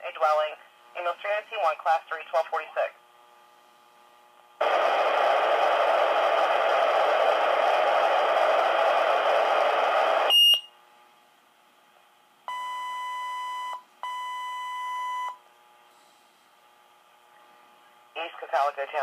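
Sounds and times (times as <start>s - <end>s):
radio static hiss: 4.6s - 10.3s, 18.1s - 19.0s
long steady pager beeps: 10.3s - 10.8s, 12.5s - 15.4s.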